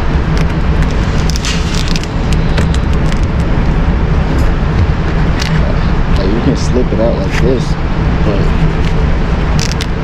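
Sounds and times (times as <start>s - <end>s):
low rumble: 0.0s - 10.0s
clicks and rustles: 9.6s - 10.0s.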